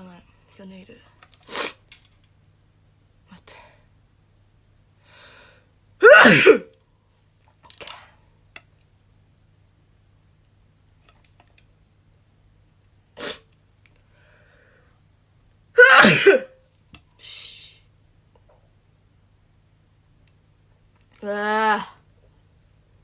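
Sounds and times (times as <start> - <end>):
quiet breathy sounds: 3.2 - 4.0, 5.0 - 5.8, 14.0 - 15.2
woman sneezing: 6.0 - 6.7, 15.8 - 16.5.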